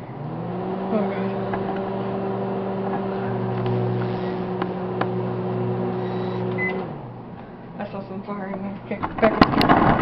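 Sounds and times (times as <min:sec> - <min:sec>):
microwave oven humming: 0:00.0 - 0:07.9
microwave beep: 0:06.0 - 0:06.9.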